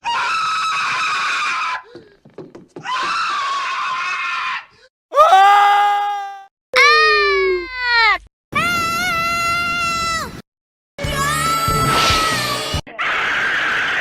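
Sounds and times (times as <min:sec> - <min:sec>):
cartoon character screaming: 0:05.2 - 0:10.3.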